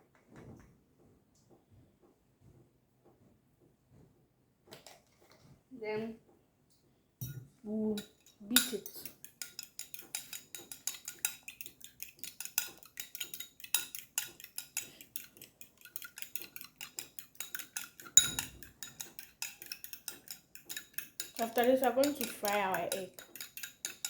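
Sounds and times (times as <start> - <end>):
egg being beaten in a bowl: 8.0 - 24.0
utensil clicking against bowl: 8.0 - 24.0.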